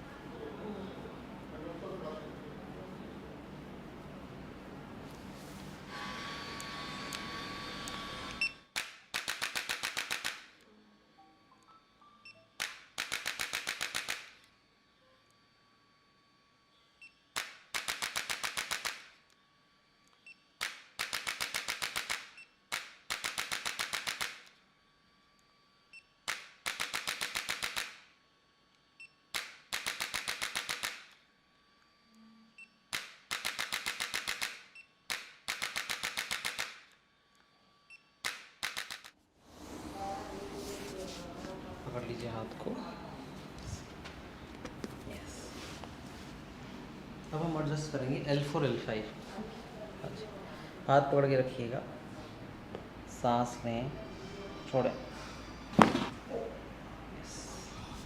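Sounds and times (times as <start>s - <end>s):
rapid mechanical clicking: 26.3s - 28.0s, 29.4s - 31.2s, 32.9s - 36.8s.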